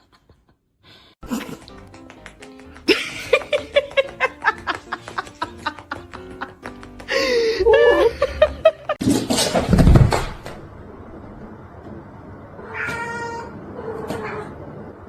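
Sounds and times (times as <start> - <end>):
cat yowling and meowing: 12.6 - 14.6.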